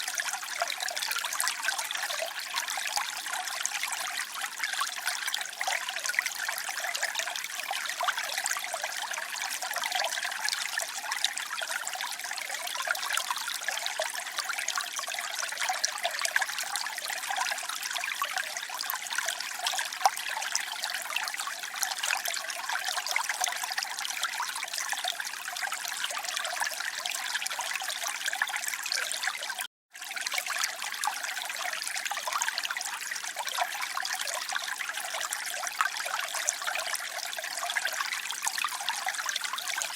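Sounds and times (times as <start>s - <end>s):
water trickling and splashing: 0.0s - 39.9s.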